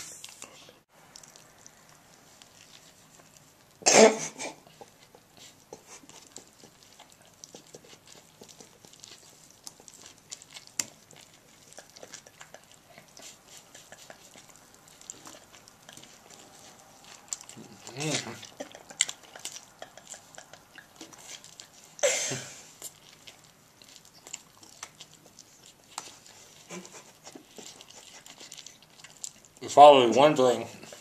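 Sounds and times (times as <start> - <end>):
mouth sounds of eating: 0.0 - 31.0
man coughing: 3.8 - 4.6, 22.0 - 22.6.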